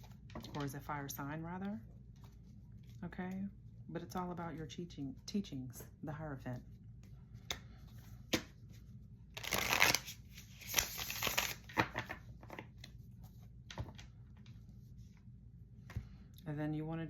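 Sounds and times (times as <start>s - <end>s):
cards being shuffled: 7.0s - 14.0s.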